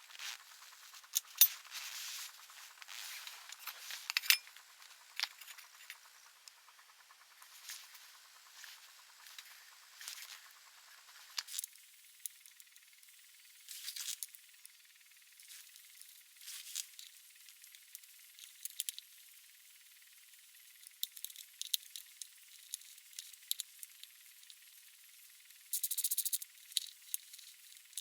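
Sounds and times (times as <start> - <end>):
thin steady hiss: 0.0 - 28.0
faint clicks and clinks: 3.4 - 6.6.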